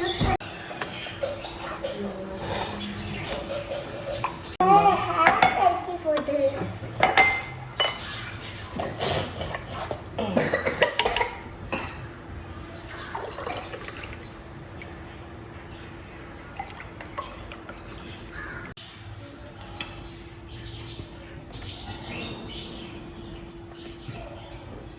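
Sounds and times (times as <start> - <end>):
dishes and utensils clinking: 0.0 - 15.2.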